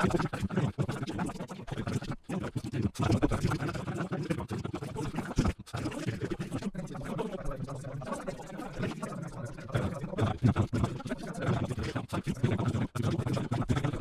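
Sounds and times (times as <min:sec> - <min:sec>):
sped-up garbled speech: 0:00.0 - 0:14.0.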